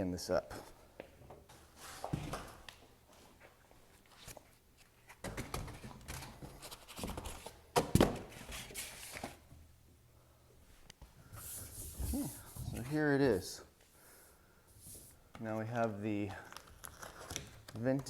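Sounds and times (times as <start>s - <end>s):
rustling and scraping: 11.2s - 13.2s.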